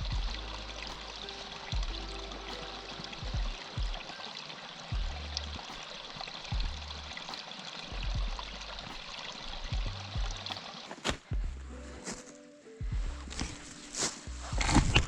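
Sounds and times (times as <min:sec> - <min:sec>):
water rushing: 0:00.0 - 0:11.4
soft background music: 0:00.0 - 0:15.0.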